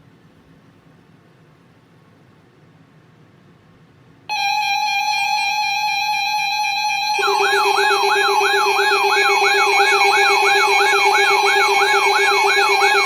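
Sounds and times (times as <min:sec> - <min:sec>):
loud steady electronic tone: 0:04.3 - 0:13.0
lower steady tone: 0:04.3 - 0:13.0
siren-like warble: 0:04.3 - 0:13.0.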